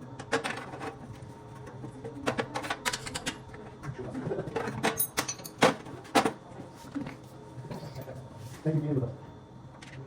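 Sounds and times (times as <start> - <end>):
metal tools clicking and clinking: 4.8 - 5.6.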